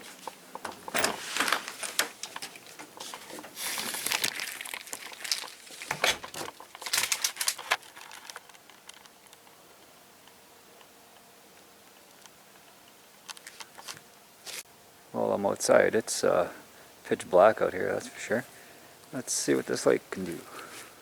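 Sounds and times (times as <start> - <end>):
crinkling and rustling: 0.0 - 9.5, 13.2 - 14.6.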